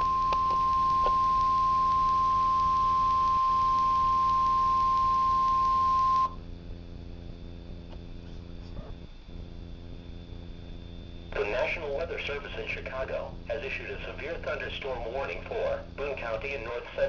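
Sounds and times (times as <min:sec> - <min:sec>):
high-pitched alarm beep: 0:00.0 - 0:06.4
receiver hum and hiss: 0:00.0 - 0:17.0.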